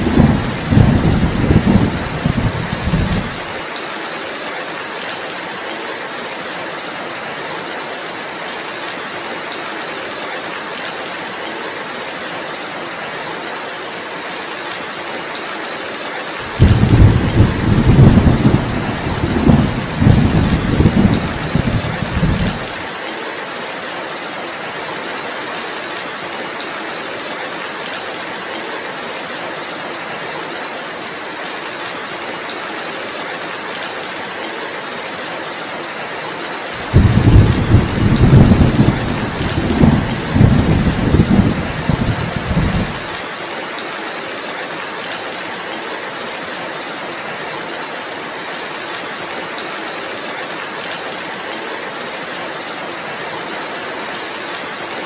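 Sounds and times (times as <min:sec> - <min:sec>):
thunder rumbling: 0:00.0 - 0:03.5, 0:16.5 - 0:22.8, 0:36.8 - 0:43.1
heavy rain hissing: 0:00.0 - 0:04.0, 0:16.4 - 0:23.0, 0:36.7 - 0:43.6.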